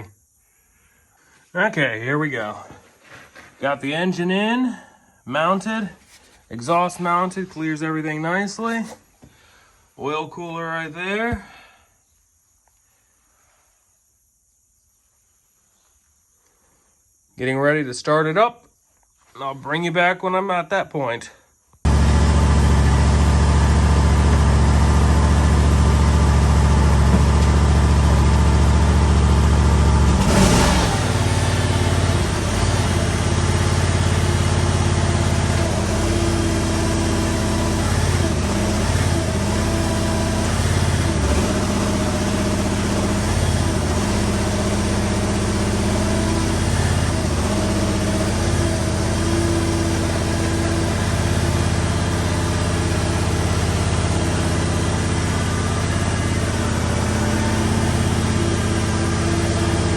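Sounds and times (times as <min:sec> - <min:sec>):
engine running: 0:21.9 - 0:59.9.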